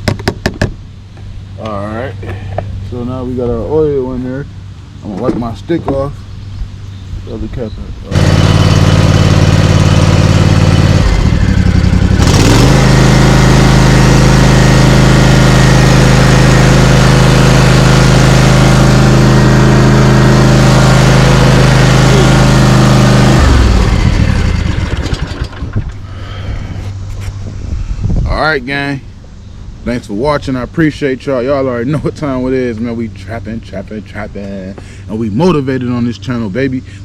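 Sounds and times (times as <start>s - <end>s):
mower engine running: 8.1s - 27.6s.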